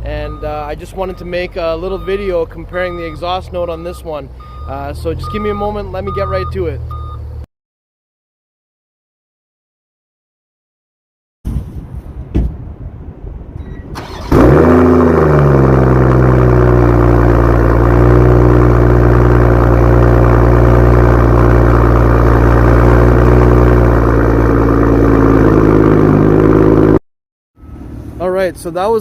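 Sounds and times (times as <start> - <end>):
car engine starting and idling: 0.0 - 7.4, 13.6 - 27.0.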